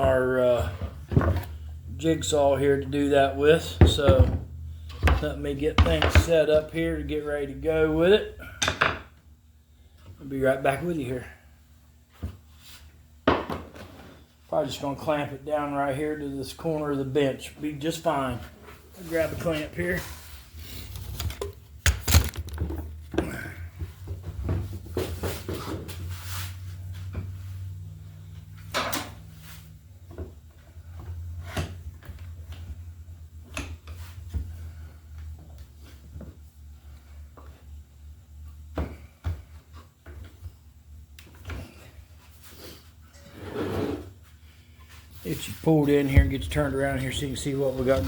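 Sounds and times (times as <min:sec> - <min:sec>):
clamp and board knocking on workbench: 0:08.6 - 0:09.1
wood and tools knocking on workbench: 0:08.6 - 0:09.1, 0:13.2 - 0:13.8.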